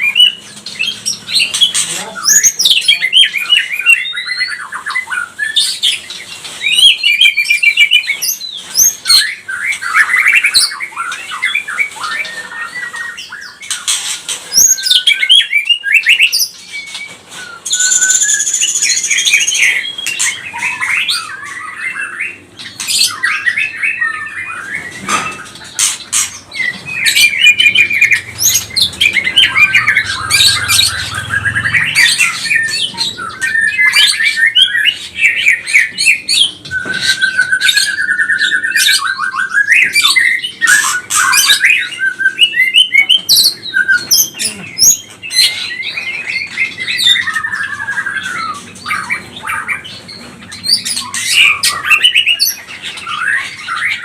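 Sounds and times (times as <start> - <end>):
songbird singing: 0.0 - 54.0.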